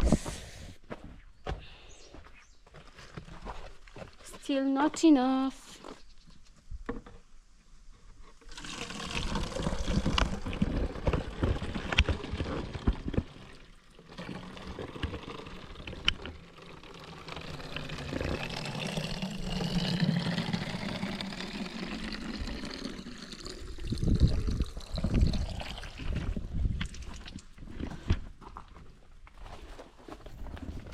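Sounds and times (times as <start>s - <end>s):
water pouring and splashing: 8.4s - 28.1s.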